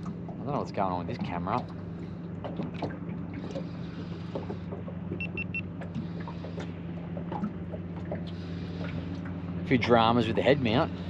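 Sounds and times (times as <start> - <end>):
boat motor humming: 0.0 - 11.0
camera high beeps: 5.2 - 5.6.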